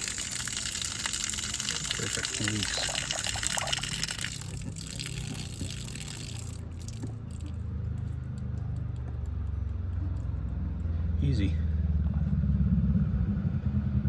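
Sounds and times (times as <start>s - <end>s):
water running from faucet: 0.0s - 7.6s
low steady rumble: 0.0s - 14.0s.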